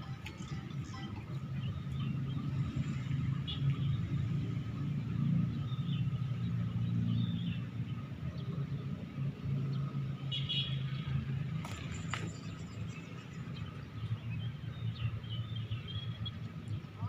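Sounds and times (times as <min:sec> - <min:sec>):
small birds chirping: 0:11.7 - 0:17.0.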